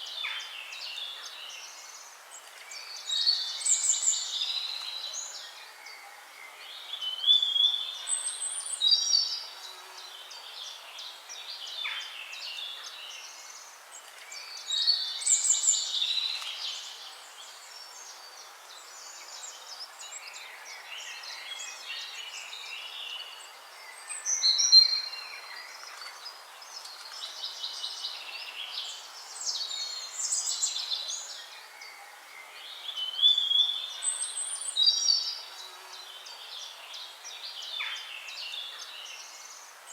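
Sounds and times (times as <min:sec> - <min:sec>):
faint steady hiss: 0:00.0 - 0:39.9
songbirds chirping and trilling: 0:00.0 - 0:39.9.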